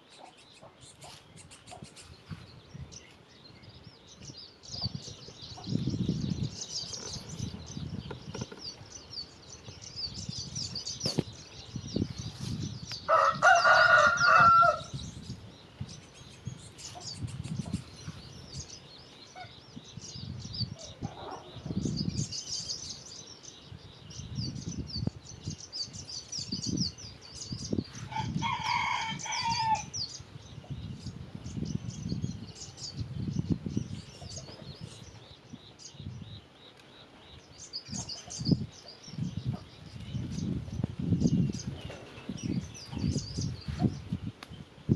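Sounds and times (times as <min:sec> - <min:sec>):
small birds chirping: 0:00.0 - 0:44.9
rooster crowing: 0:13.1 - 0:14.9, 0:28.1 - 0:29.9.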